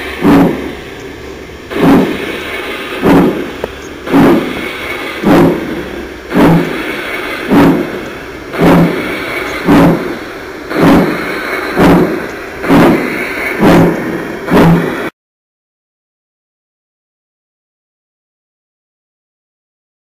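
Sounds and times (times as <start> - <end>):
model locomotive steam chuffs: 0.0 - 15.1
steady steam hiss: 0.0 - 15.1.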